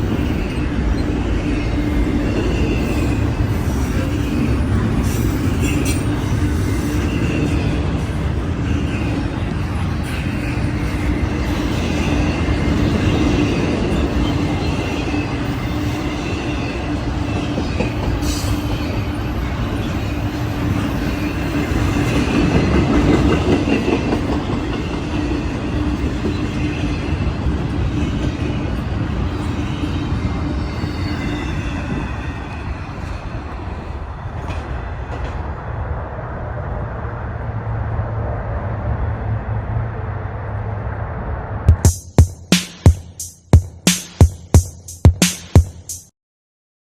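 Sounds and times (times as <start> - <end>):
train wheels rumbling on rail: 0.0 - 46.0
high wheel squeal: 28.6 - 33.7.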